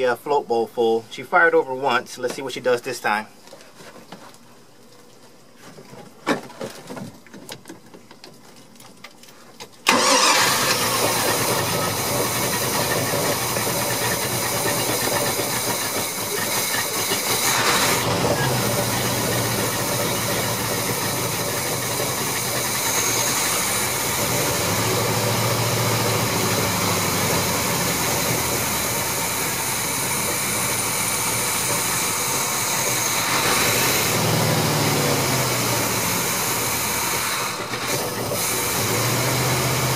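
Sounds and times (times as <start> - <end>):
engine cranking and running: 9.9 - 39.9.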